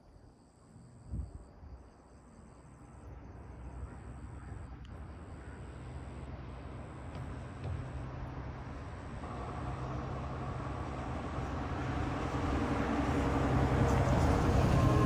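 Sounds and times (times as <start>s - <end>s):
road traffic rumble: 4.0s - 15.0s.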